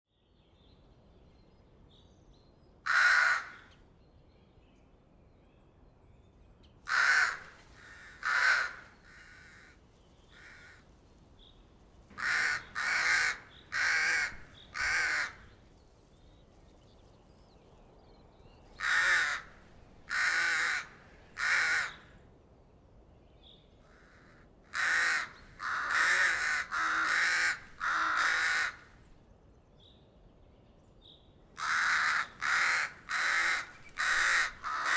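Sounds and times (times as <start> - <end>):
crow cawing: 2.9 - 3.7, 6.9 - 10.9, 12.1 - 15.5, 18.8 - 22.2, 23.9 - 29.0, 31.6 - 34.9.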